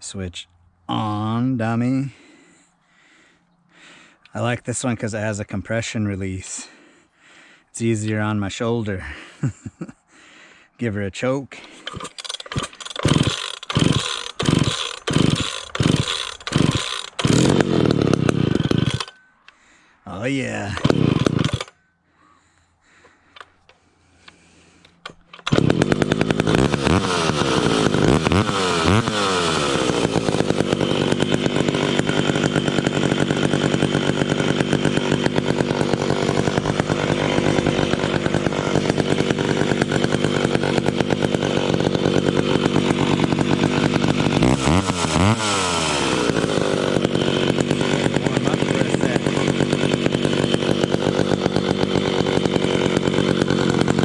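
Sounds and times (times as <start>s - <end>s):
chainsaw starting and revving: 11.6s - 21.8s, 22.9s - 54.0s.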